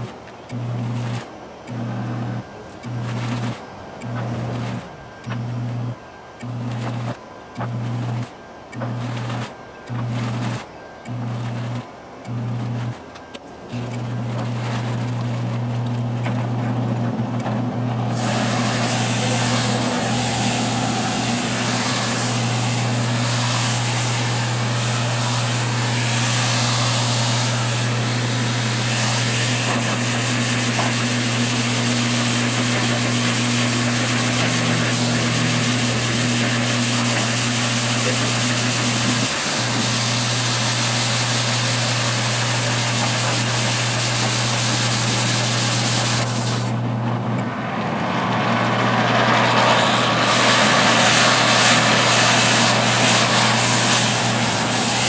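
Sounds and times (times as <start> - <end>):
washing machine motor hum: 0.0 - 55.0
water churning hiss: 17.3 - 46.8, 49.7 - 55.0.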